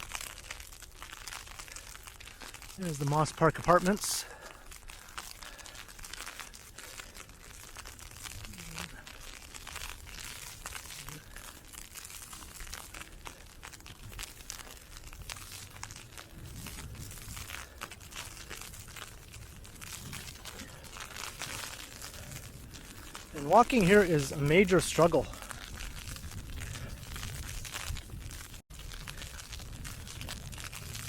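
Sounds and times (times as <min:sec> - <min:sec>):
ice pellets crackling and ticking: 0:00.0 - 0:31.0
low wind rumble on microphone: 0:15.2 - 0:23.0, 0:25.3 - 0:31.0.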